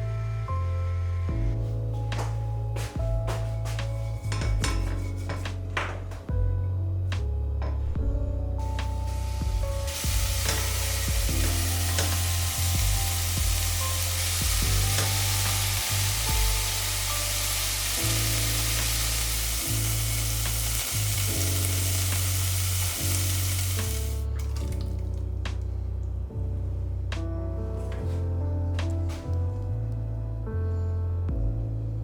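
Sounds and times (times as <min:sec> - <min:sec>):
music with deep bass line: 0:00.0 - 0:32.0
food sizzling in a pan: 0:08.9 - 0:24.2.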